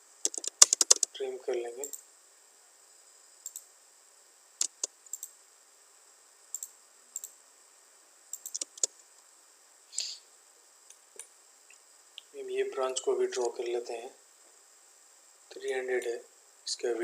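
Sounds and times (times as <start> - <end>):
computer mouse and keyboard clicks: 0.3 - 1.1, 4.6 - 5.3, 8.4 - 8.9.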